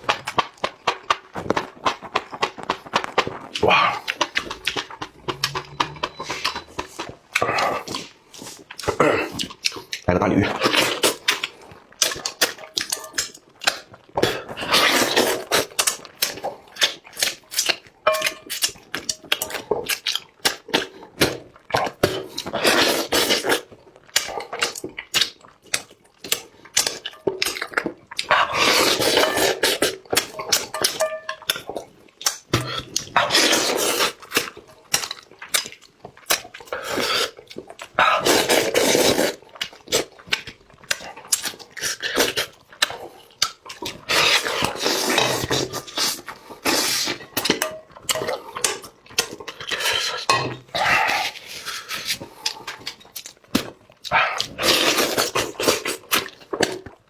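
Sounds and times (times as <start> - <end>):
person slurping food: 3.4 - 9.8, 14.2 - 15.8, 22.0 - 23.7, 28.3 - 30.0, 32.6 - 34.4, 36.7 - 37.4, 38.0 - 40.1, 43.9 - 47.5, 49.5 - 52.9, 54.2 - 56.3.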